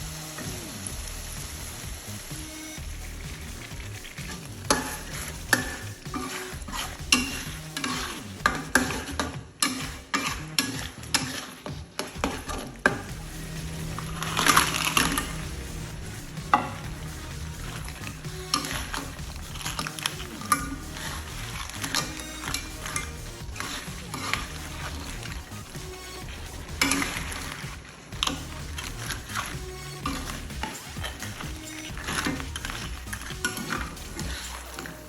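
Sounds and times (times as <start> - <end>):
oil sizzling: 0.0 - 9.9, 12.2 - 35.0
spatula scraping a pan: 4.0 - 12.5.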